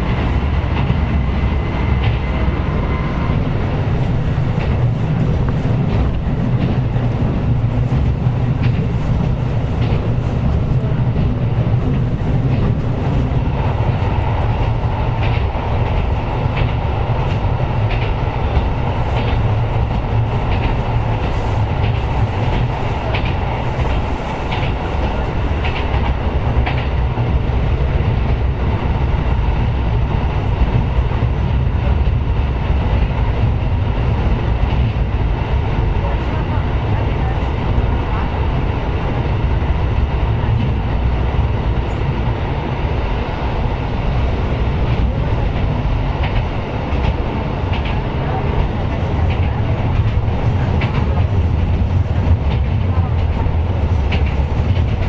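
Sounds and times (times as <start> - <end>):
railcar engine and wheels rumbling: 0.0 - 55.0
wheels clacking over rail joints: 44.8 - 55.0.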